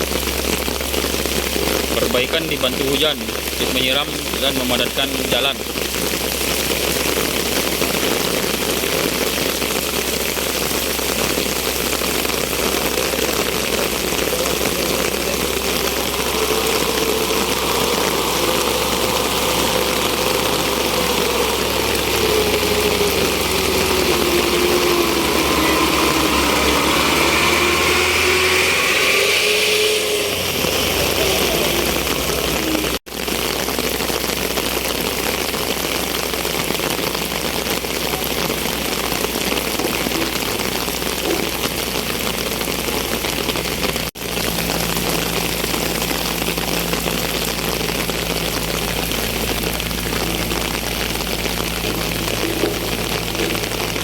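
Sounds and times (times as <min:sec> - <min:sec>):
heavy rain falling: 0:00.0 - 0:54.0
vehicle engine running: 0:00.0 - 0:54.0.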